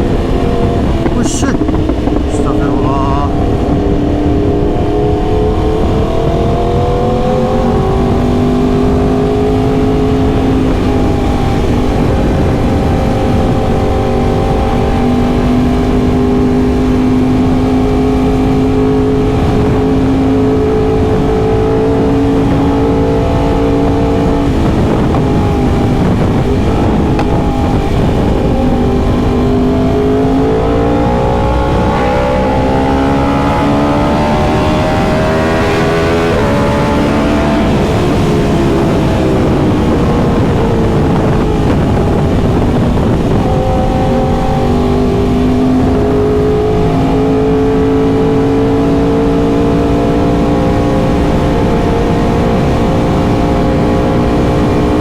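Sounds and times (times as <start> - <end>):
low rushing noise: 0.0 - 16.4
motorcycle engine running: 0.0 - 55.0.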